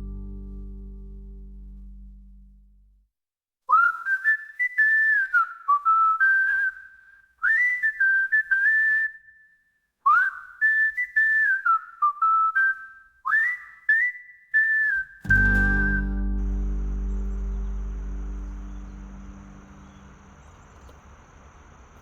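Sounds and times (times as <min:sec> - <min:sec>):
person whistling slow tune: 0:03.7 - 0:20.0.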